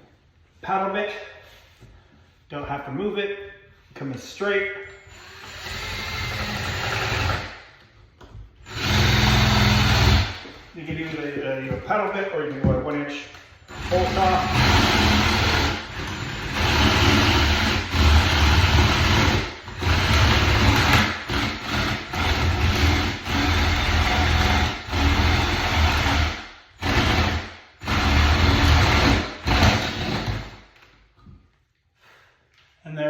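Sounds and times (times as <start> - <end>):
power drill boring into wood: 5.1 - 7.5, 8.7 - 10.4, 13.7 - 30.6.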